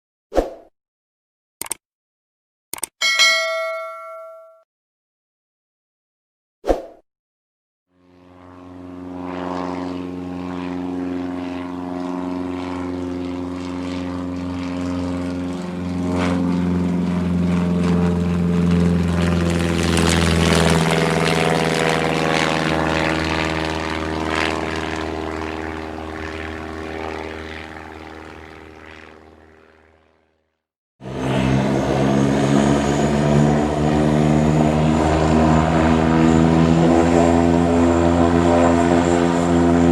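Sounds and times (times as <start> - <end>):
sharp click: 1.6 - 1.8, 2.7 - 3.6
propeller plane engine droning: 7.9 - 39.9.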